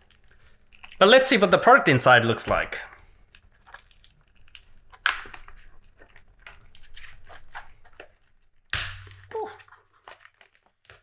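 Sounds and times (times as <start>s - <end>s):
sharp cardboard crack: 5.0s - 5.7s, 8.8s - 9.8s.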